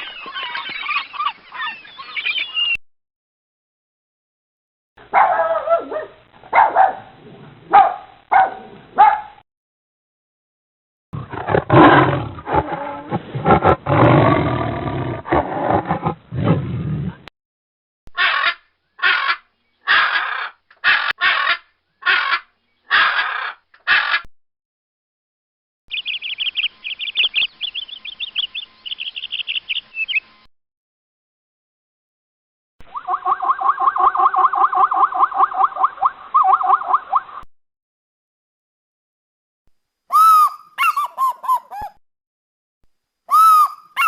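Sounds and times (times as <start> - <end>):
animal calls: 40.1 - 42.0, 43.3 - 44.0.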